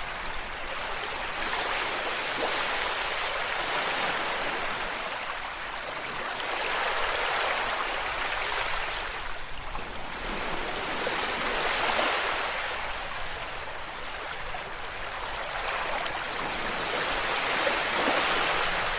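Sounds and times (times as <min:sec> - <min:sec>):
ocean waves washing ashore: 0:00.0 - 0:18.9.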